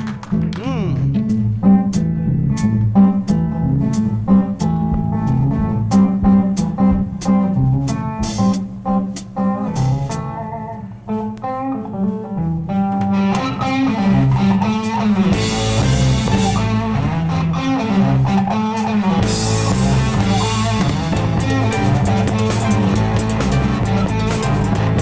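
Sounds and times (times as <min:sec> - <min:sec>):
guitar riff: 0:00.1 - 0:25.0
rock band playing: 0:02.6 - 0:10.5, 0:13.1 - 0:25.0
drum kit: 0:03.9 - 0:10.2, 0:19.2 - 0:25.0.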